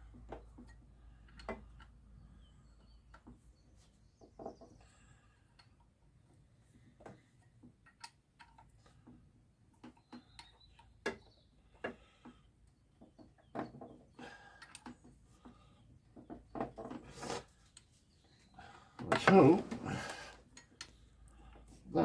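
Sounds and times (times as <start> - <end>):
tools clicking and knocking on bench: 0.1 - 2.0, 7.0 - 9.2.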